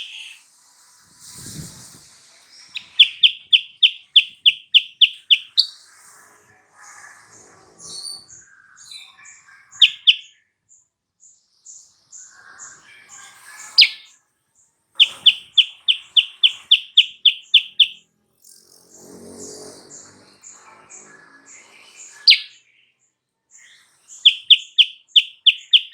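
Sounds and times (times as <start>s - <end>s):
bird chirping and singing: 0.0s - 0.4s, 2.8s - 5.8s, 8.9s - 10.3s, 13.6s - 14.1s, 15.0s - 18.0s, 20.9s - 22.7s, 24.2s - 25.9s
high peeps in background: 0.0s - 0.4s, 2.8s - 5.8s, 9.8s - 10.3s, 13.8s - 14.1s, 15.0s - 18.0s, 22.3s - 22.6s, 24.3s - 25.9s.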